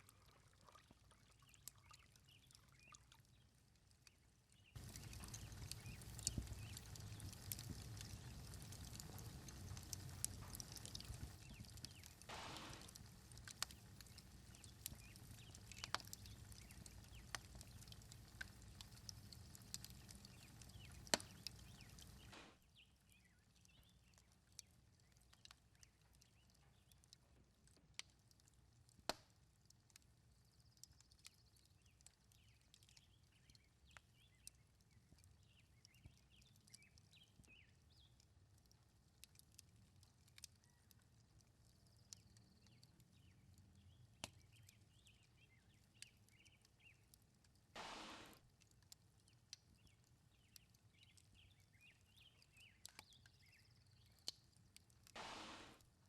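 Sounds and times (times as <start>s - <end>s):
faint birdsong: 0.1s - 27.2s, 30.4s - 38.2s, 40.5s - 47.2s, 49.2s - 54.5s
steady background hiss: 4.8s - 17.3s.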